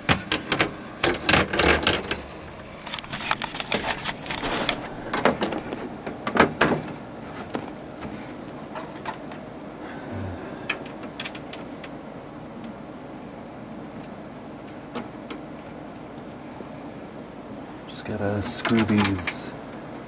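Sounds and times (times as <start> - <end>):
computer case panel clicks and knocks: 0.0 - 2.3, 5.1 - 7.7.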